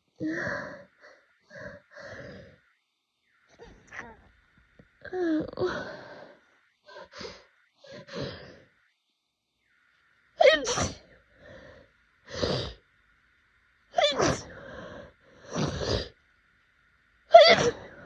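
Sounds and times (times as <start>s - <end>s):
person breathing in quickly: 5.6s - 8.7s.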